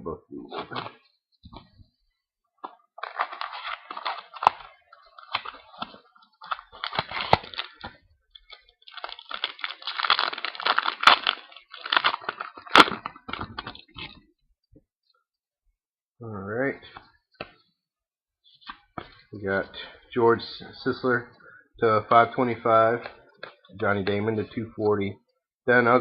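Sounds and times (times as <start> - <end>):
plastic wrap crinkling and tearing: 2.6 - 14.2.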